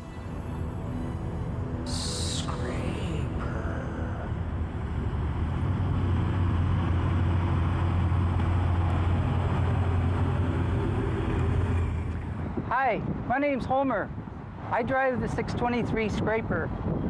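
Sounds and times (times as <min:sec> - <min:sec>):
heavy diesel engine droning: 0:00.0 - 0:12.7.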